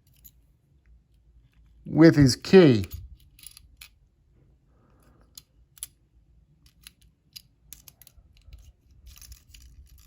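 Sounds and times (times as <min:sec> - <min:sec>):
metal clicks in a lock: 0:06.6 - 0:10.0.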